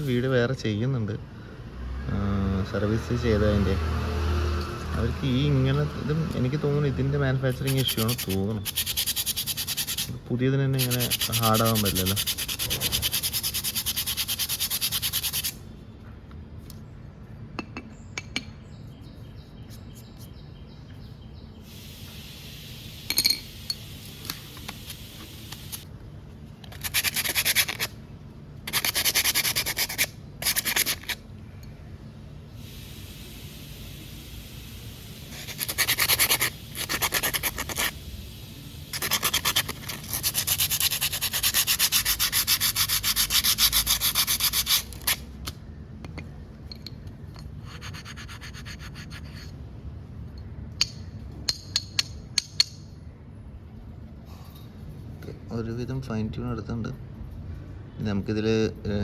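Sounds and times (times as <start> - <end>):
sandpaper rubbing on brake pad: 7.3 - 15.6, 26.6 - 28.0, 28.6 - 31.2, 35.2 - 38.0, 38.9 - 45.3, 47.6 - 49.5.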